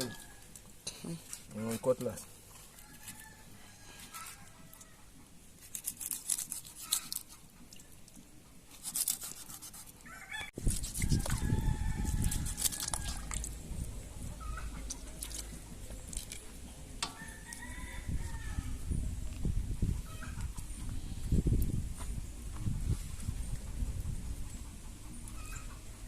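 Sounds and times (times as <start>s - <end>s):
rooster crowing: 0.0s - 0.5s, 2.8s - 5.0s, 10.0s - 13.4s, 17.1s - 18.8s
low rumble: 11.3s - 26.0s
chickens clucking: 13.6s - 16.1s.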